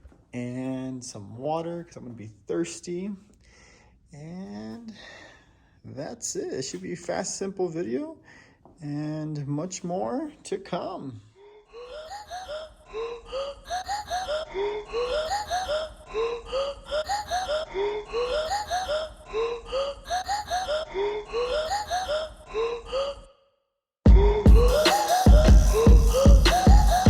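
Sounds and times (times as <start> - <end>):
breathy vocal-like background music: 11.4 - 23.3, 24.1 - 27.0
music with heavy beat: 24.1 - 27.0.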